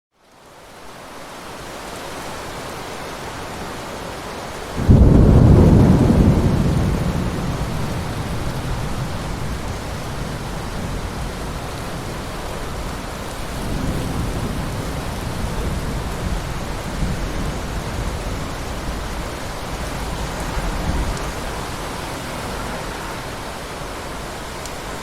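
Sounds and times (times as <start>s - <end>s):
heavy rain falling: 0.2s - 25.0s
thunder rumbling: 4.8s - 23.3s.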